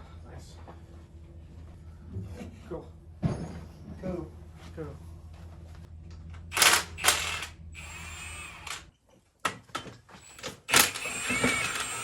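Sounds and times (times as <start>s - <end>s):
low steady hum: 0.0s - 9.2s
power tool running in bursts: 6.5s - 8.9s, 10.2s - 12.0s.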